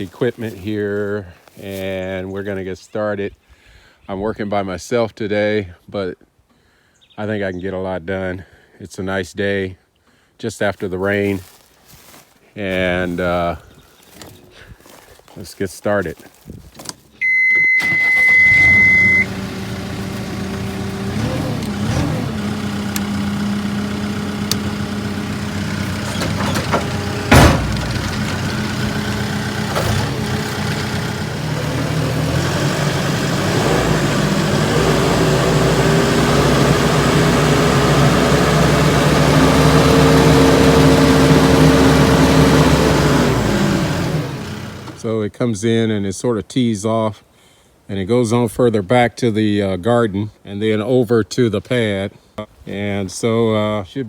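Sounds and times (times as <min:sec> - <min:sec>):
steady beep: 0:17.2 - 0:19.3
heavy equipment engine running: 0:17.2 - 0:45.0.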